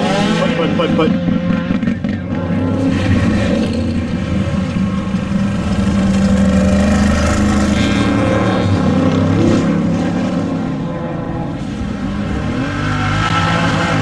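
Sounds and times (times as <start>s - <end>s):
vehicle engine running: 0.0s - 11.5s.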